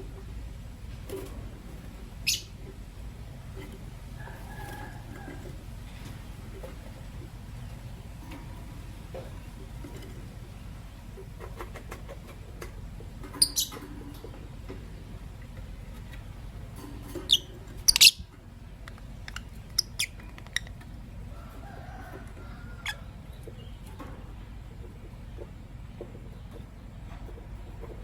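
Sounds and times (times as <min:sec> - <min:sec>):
low background hum: 0:00.0 - 0:28.0
lovebirds chirping: 0:02.1 - 0:02.7, 0:13.2 - 0:13.8, 0:17.2 - 0:20.8.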